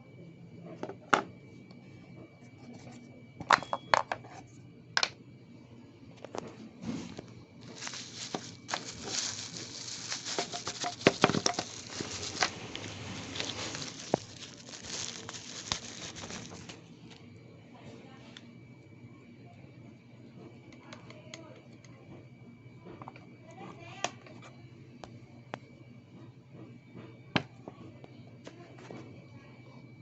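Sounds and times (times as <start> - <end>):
dense crinkling and clicking: 7.6 - 17.2.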